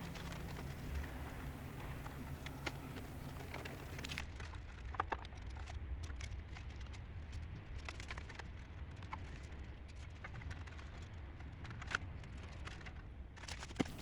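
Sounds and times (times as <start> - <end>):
low steady hum: 0.0 - 4.2.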